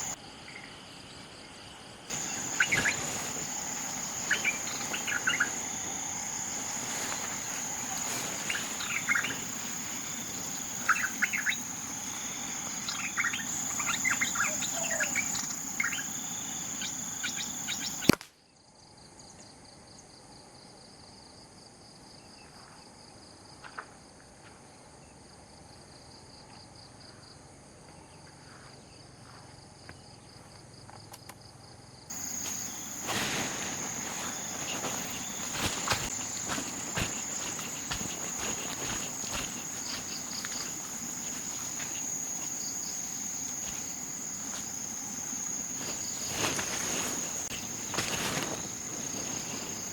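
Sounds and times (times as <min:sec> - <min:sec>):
bird chirps: 0:02.1 - 0:18.1
faint pulsing insect buzz: 0:02.1 - 0:18.1, 0:32.1 - 0:49.9
high-pitched insect drone: 0:02.1 - 0:18.1, 0:32.1 - 0:49.9.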